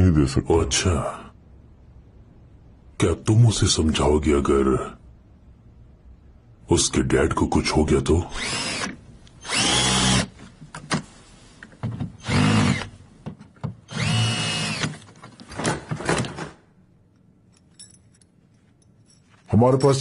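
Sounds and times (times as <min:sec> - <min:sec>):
electric drill whining: 0:08.4 - 0:10.3, 0:12.2 - 0:12.9, 0:13.9 - 0:15.0.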